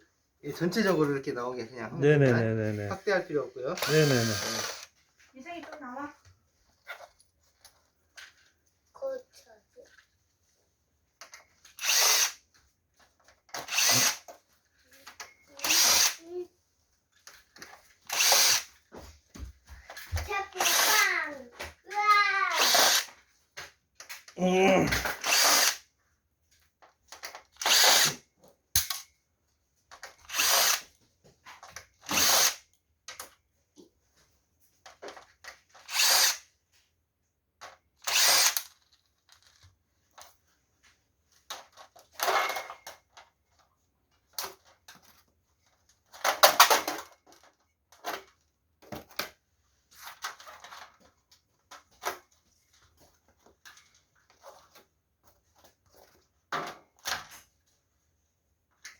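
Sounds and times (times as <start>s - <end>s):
power drill whirring in bursts: 3.8s - 4.9s, 11.8s - 12.4s, 13.6s - 14.2s, 15.6s - 16.2s, 18.1s - 18.7s, 20.6s - 21.0s, 22.6s - 23.1s, 25.2s - 25.8s, 27.6s - 28.2s, 30.3s - 30.8s, 32.1s - 32.6s, 35.9s - 36.4s, 38.0s - 38.6s.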